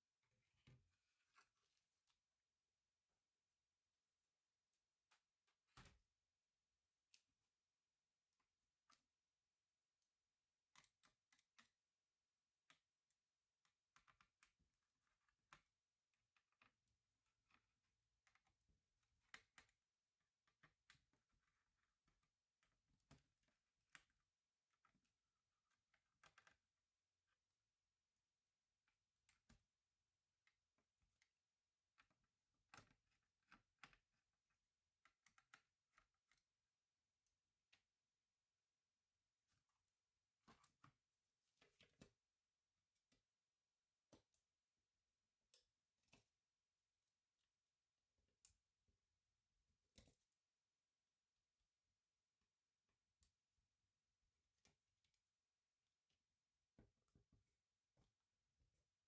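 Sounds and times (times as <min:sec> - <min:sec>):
faint clicks and taps of tools: 0:09.9 - 0:27.7, 0:28.7 - 0:38.0, 0:39.4 - 0:44.7, 0:45.4 - 0:46.5, 0:49.8 - 0:50.5.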